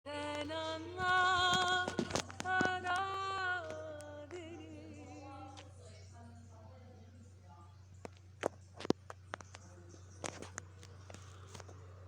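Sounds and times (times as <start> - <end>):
woman singing with vibrato: 0.0 - 5.5.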